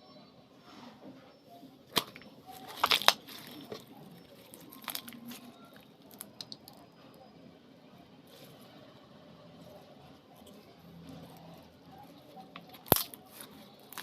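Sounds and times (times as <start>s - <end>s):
slime making sticky crackling pops: 1.9s - 3.9s, 4.5s - 6.8s, 12.5s - 14.0s.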